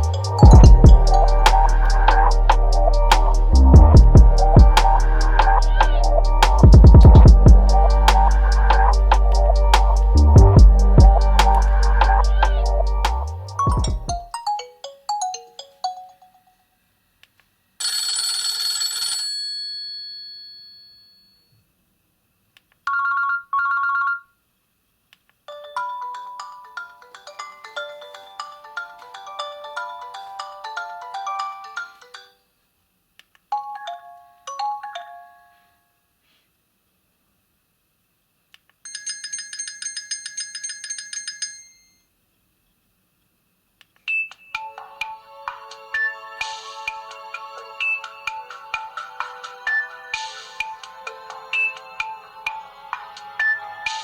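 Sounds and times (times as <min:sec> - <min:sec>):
phone ringtones and alert tones: 0:00.0 - 0:16.6.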